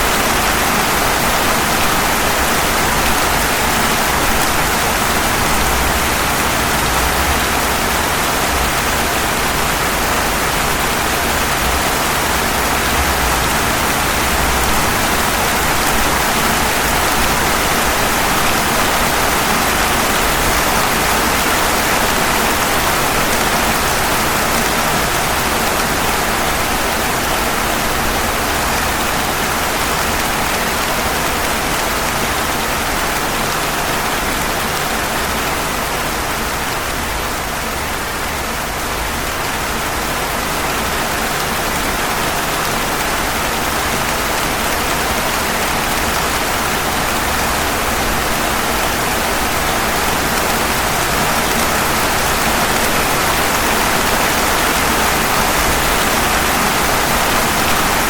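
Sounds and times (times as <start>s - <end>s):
rain falling on pavement: 0.0s - 58.0s.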